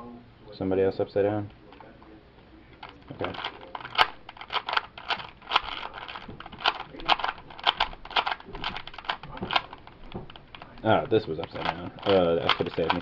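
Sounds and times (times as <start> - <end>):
puzzle cube clicking: 2.8 - 13.0.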